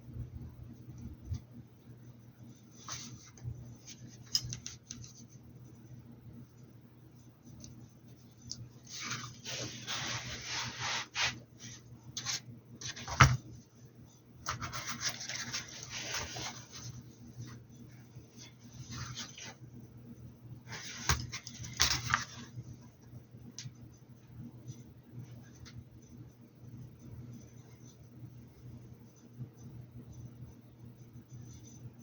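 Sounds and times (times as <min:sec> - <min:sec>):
paintbrush scrubbing on fabric: 0:08.9 - 0:11.8.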